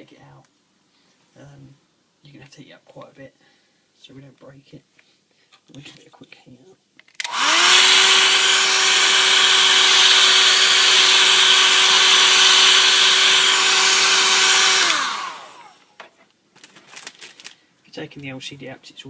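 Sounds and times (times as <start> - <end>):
hot-air blower running: 7.2 - 15.9.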